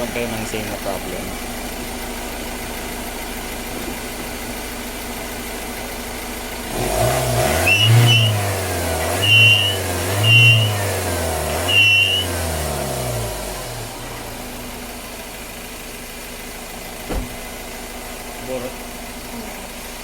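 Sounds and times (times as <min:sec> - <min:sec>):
diesel engine idling and revving: 0:00.0 - 0:20.0
high air whistle: 0:07.6 - 0:08.5, 0:09.1 - 0:11.0, 0:11.6 - 0:12.4.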